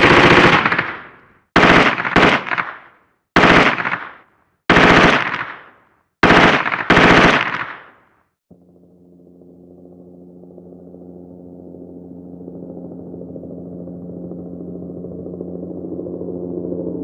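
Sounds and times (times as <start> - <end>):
low droning tone: 8.5 - 17.0.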